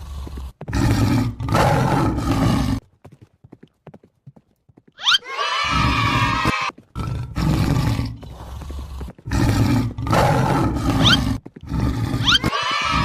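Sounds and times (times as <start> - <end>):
animal roaring: 0.0 - 2.8, 5.1 - 13.0
high rising squeaks: 5.0 - 6.7, 12.2 - 13.0.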